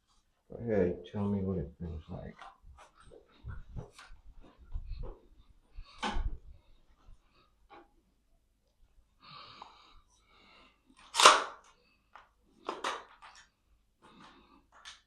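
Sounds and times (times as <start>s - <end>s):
faint small noises: 0.0s - 15.0s.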